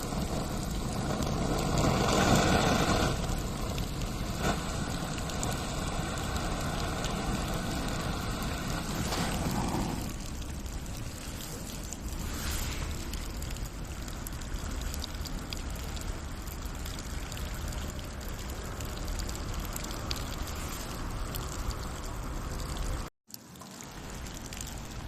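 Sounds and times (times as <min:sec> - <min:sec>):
steady rain: 0:00.0 - 0:25.0
drops ticking: 0:12.9 - 0:25.0.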